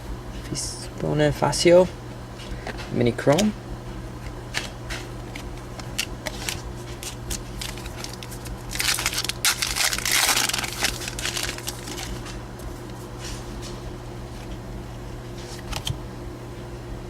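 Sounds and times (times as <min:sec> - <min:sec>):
foil wrapper crinkling and tearing: 0:04.5 - 0:13.0.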